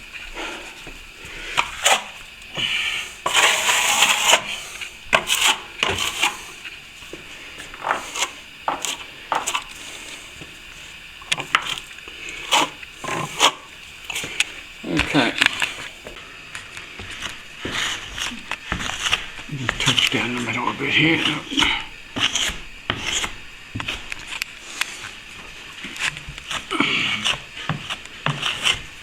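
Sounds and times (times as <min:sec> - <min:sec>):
short tool scrape: 0:00.4 - 0:16.1.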